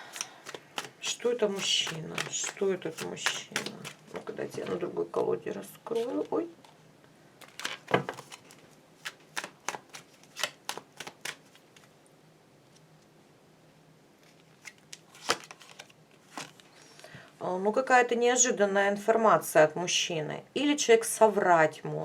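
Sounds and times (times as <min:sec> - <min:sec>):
cards snapping and slapping: 0:00.0 - 0:04.2, 0:07.4 - 0:11.9, 0:14.6 - 0:16.5.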